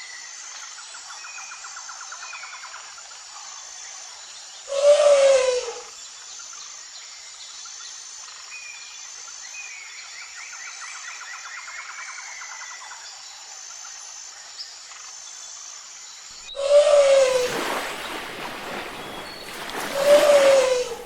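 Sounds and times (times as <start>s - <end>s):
insects trilling: 16.4s - 21.0s
frogs calling: 16.5s - 21.0s
elephant trumpeting: 16.6s - 21.0s.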